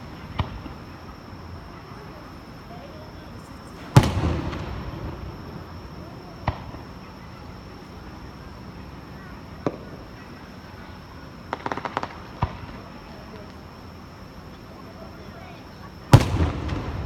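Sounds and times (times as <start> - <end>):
fireworks shell booming: 3.8 - 6.9, 16.1 - 17.0.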